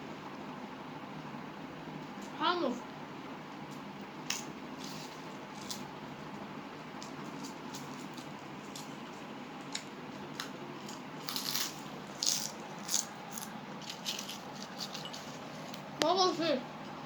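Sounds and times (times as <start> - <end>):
potato chips crunching: 4.3 - 6.0, 6.9 - 15.9
chip bag rustling: 4.8 - 5.9, 10.8 - 15.9.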